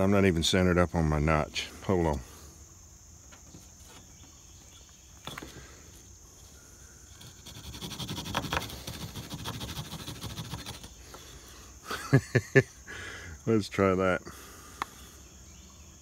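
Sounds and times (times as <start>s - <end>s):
crickets trilling: 0.0s - 16.0s
hand drill grinding on wood: 7.1s - 11.3s.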